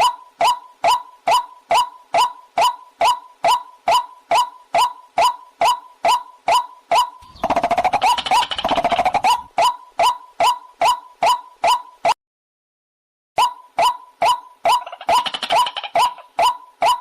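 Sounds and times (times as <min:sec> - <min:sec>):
waterhen calls: 0:07.0 - 0:11.8
fast chattering: 0:07.2 - 0:09.5.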